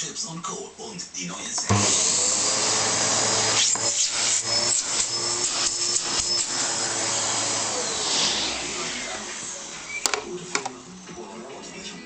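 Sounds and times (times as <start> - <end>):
vacuum cleaner running: 1.6 - 11.2.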